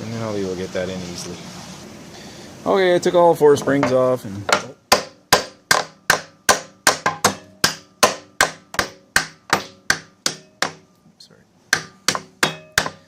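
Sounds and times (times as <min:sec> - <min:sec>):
hammer striking metal: 0:03.8 - 0:10.9, 0:11.7 - 0:13.0.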